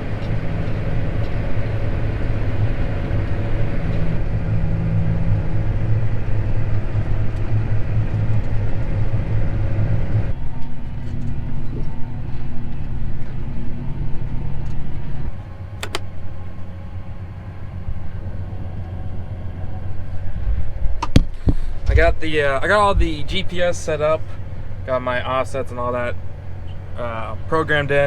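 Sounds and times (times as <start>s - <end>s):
vehicle engine running: 0.0s - 28.0s
short clicks: 15.8s - 16.1s.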